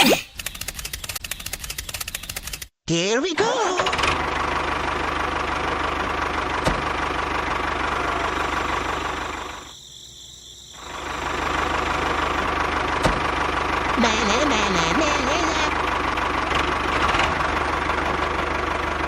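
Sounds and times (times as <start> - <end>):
motor running with fast rattle: 0.4 - 2.7.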